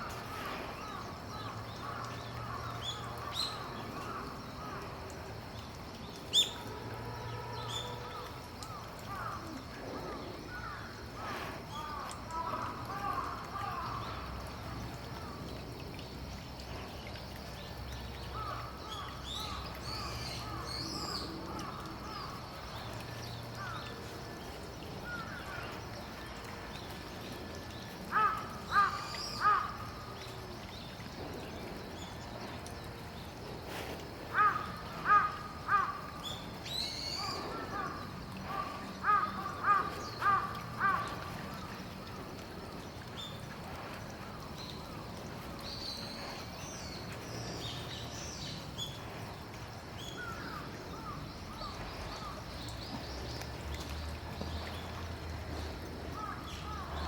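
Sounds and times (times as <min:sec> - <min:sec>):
crow cawing: 0:34.4 - 0:36.0, 0:38.5 - 0:41.0.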